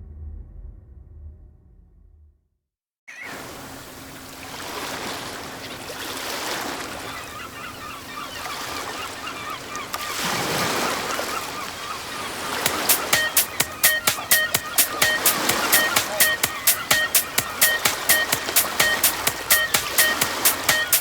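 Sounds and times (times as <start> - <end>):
waterbirds calling: 3.1 - 21.0
waves washing on shore: 3.2 - 21.0.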